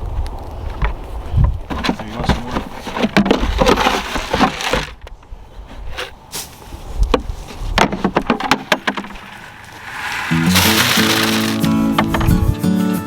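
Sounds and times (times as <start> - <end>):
music: 10.4 - 13.0.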